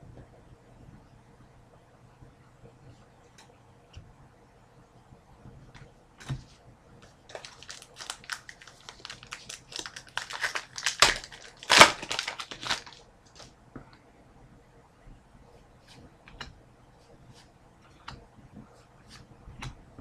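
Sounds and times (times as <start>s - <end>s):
card pack wrapper tearing: 7.3s - 13.0s.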